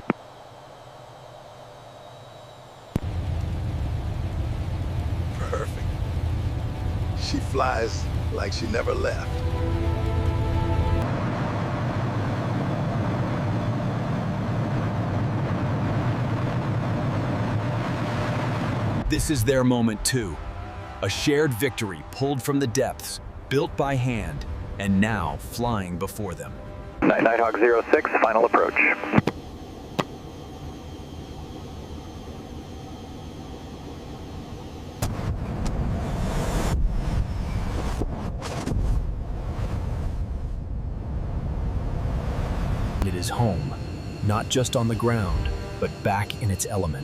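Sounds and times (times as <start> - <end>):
faint steady whine: 0.0 - 38.0, 39.0 - 47.0
jet engine low rumble: 0.0 - 47.0
rush of wind-like noise: 35.0 - 47.0.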